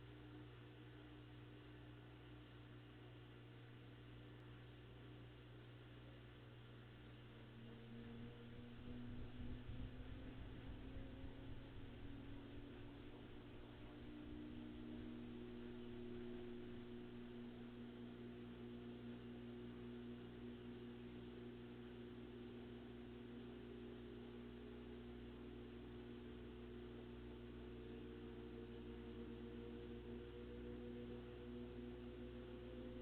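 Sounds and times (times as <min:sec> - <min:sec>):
washing machine motor hum: 0:06.2 - 0:33.0
rising tones of spinning drum: 0:07.0 - 0:33.0.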